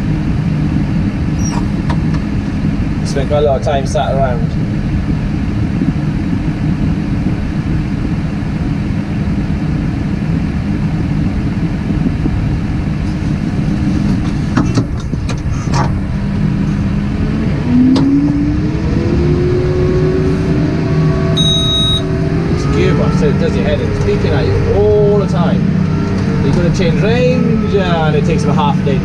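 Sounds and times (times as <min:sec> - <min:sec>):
high-pitched warning beep: 0:21.4 - 0:22.1
tractor engine running: 0:21.4 - 0:27.3.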